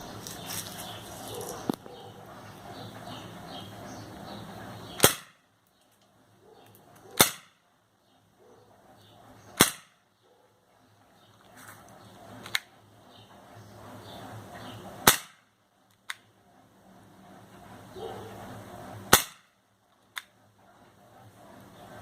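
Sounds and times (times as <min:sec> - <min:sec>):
airsoft gun shots: 0:05.0 - 0:05.4, 0:07.2 - 0:07.6, 0:09.6 - 0:10.0, 0:15.0 - 0:15.4, 0:19.1 - 0:19.5.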